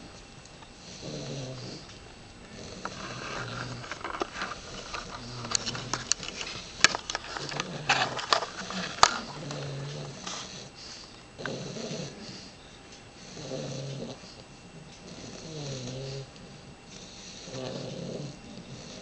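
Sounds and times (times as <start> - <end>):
puppies snoring: 0.0 - 19.0
sharp clicks and snorts: 0.5 - 12.1.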